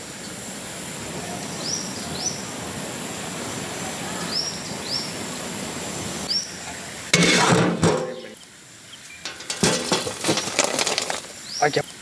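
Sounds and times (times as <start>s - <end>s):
fire rush: 0.0s - 11.7s
small birds chirping: 1.3s - 2.6s, 4.0s - 5.2s, 6.2s - 7.0s, 8.2s - 9.5s, 11.2s - 12.0s
pots and utensils clinking: 7.2s - 8.4s, 9.2s - 11.3s.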